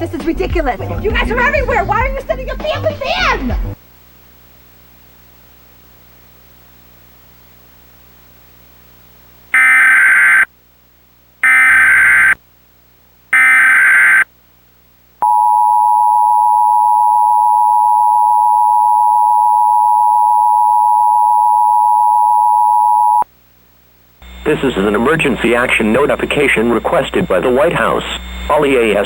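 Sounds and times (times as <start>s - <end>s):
digital screeching data bursts: 11.4s - 12.4s, 13.4s - 14.2s, 24.2s - 29.0s.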